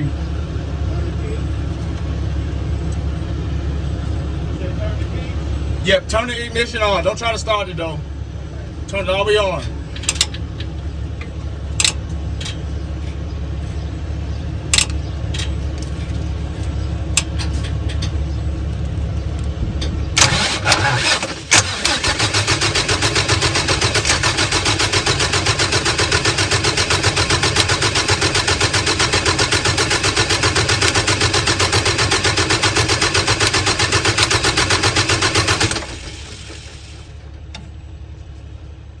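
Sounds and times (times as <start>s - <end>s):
diesel engine starter cranking: 20.2s - 37.2s.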